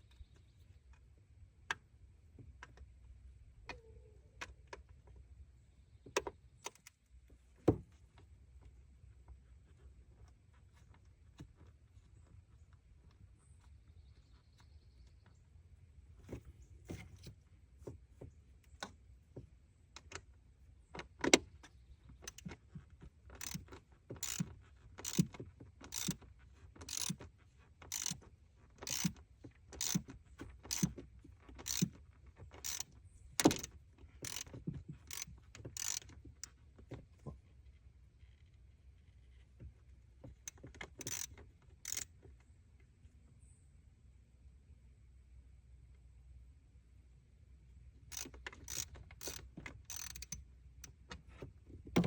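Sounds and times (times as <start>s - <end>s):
hand ratchet clicking: 23.3s - 26.2s, 26.8s - 27.2s, 27.8s - 28.2s, 28.8s - 29.2s, 29.8s - 31.0s, 31.6s - 32.0s, 32.6s - 36.2s, 40.5s - 42.1s, 48.1s - 50.4s.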